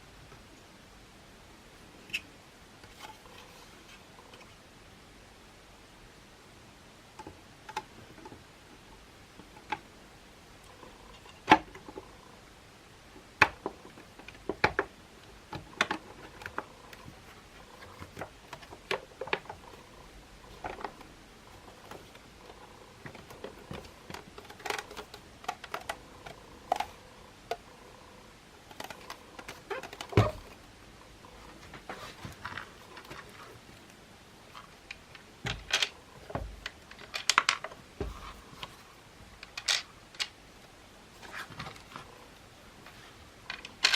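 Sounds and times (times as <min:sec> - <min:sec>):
plastic parts clicking and knocking: 0:07.2 - 0:09.9, 0:10.6 - 0:12.2, 0:13.2 - 0:27.7, 0:28.6 - 0:33.9, 0:34.5 - 0:38.8, 0:39.4 - 0:40.4, 0:43.5 - 0:43.9.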